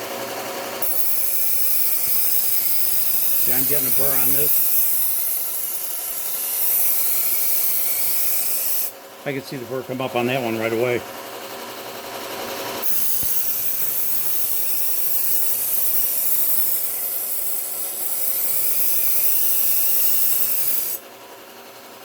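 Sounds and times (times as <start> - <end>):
knife grinding on belt sander: 0.8 - 9.0, 12.1 - 21.0.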